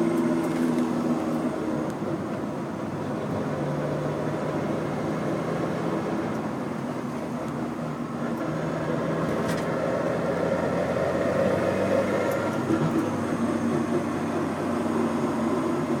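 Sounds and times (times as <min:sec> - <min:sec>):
car engine droning while driving: 0:00.0 - 0:16.0.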